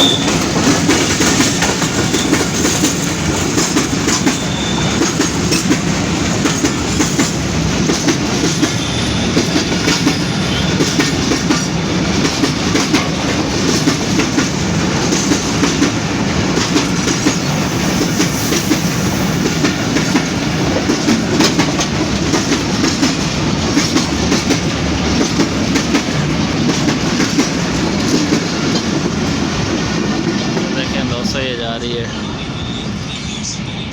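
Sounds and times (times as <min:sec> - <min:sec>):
wheels clicking over rail joints: 0:00.0 - 0:17.5, 0:19.4 - 0:30.8
freight train rumbling past: 0:00.0 - 0:33.9.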